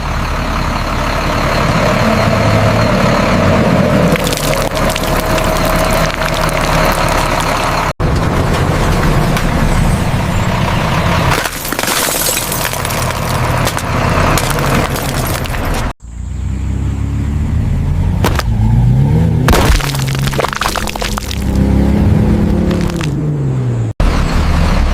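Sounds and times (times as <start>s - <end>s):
heavy truck engine running: 0.0s - 16.5s
wheels crushing objects: 4.1s - 9.7s, 11.3s - 15.9s, 18.2s - 18.5s, 19.5s - 21.8s, 22.4s - 23.2s.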